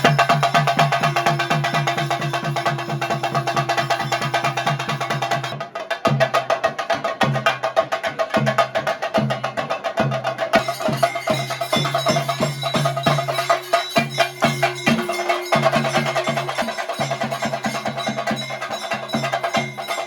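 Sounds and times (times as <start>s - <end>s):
drums beaten fast with sticks: 0.0s - 20.0s
steady ringing tone: 10.6s - 20.0s.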